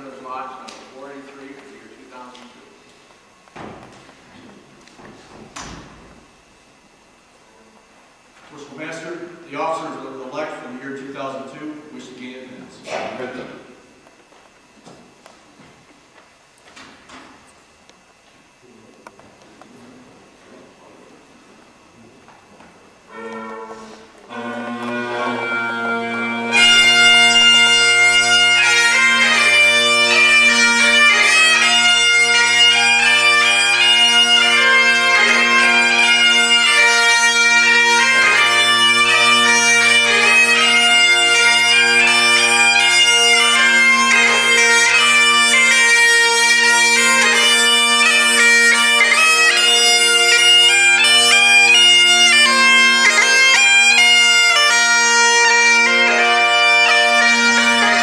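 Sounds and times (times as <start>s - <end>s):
bagpipes playing a tune: 23.1s - 58.0s.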